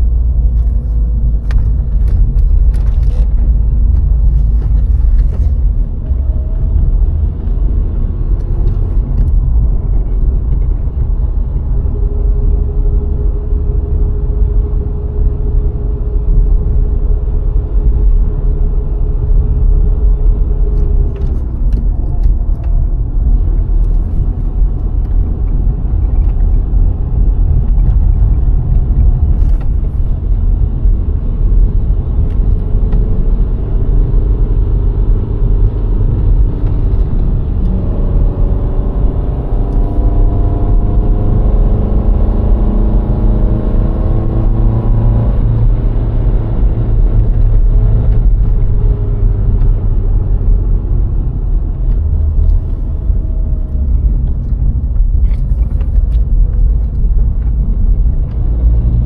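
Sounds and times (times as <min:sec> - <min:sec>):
car engine: 0:00.0 - 0:59.0
tyre and wind road noise: 0:00.0 - 0:59.0.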